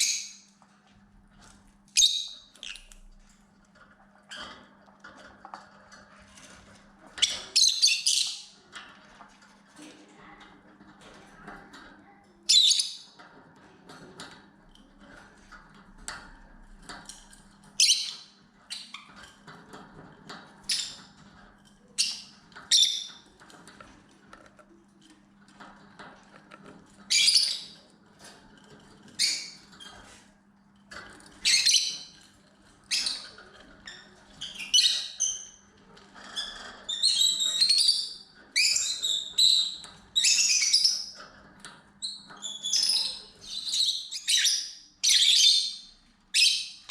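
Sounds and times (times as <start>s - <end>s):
lovebirds chirping and squawking: 0.0s - 0.5s, 1.4s - 3.2s, 6.4s - 8.6s, 12.5s - 13.2s, 17.7s - 19.7s, 21.9s - 23.8s, 27.0s - 30.2s, 31.2s - 41.3s, 42.0s - 46.9s.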